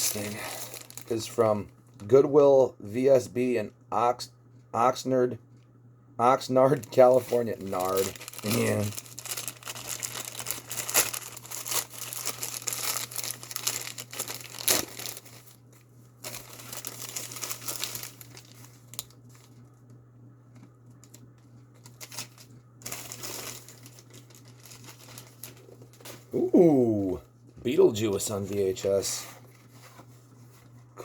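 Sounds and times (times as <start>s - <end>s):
packaging being torn and crinkled: 0.0s - 1.2s, 6.8s - 15.6s, 16.2s - 19.6s, 21.8s - 26.2s
low steady hum: 0.0s - 31.0s.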